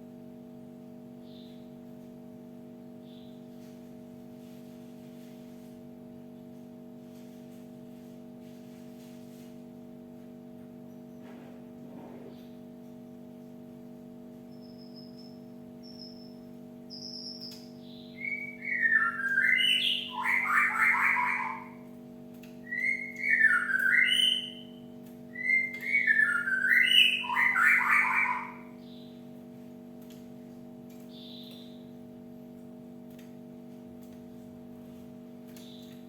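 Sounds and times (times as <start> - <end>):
steady low hum: 0.0 - 36.0
bird whistling and chattering: 18.0 - 21.8, 22.7 - 28.8.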